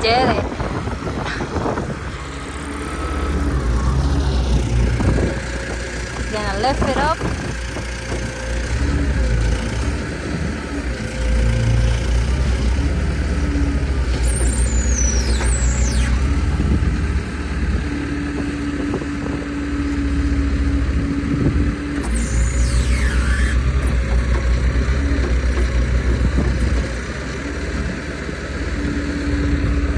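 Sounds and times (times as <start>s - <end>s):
tractor engine rumbling: 0.0s - 29.9s
high falling whistles: 14.3s - 16.4s, 22.0s - 23.7s
steady hum: 22.0s - 24.1s.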